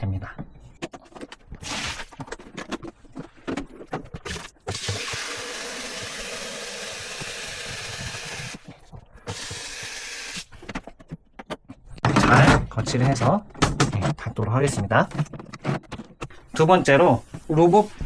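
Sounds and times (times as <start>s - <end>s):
plastic parts clicking and knocking: 2.2s - 16.6s.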